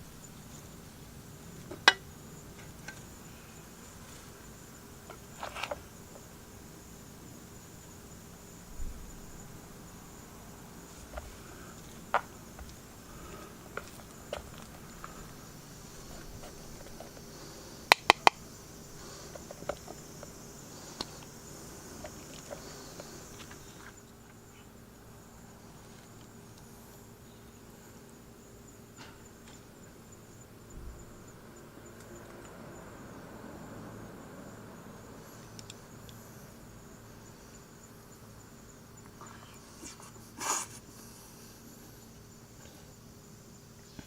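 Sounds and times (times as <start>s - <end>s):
high-pitched insect drone: 0.0s - 44.0s
sharp clicks: 17.9s - 18.4s
light ticks: 35.4s - 36.2s.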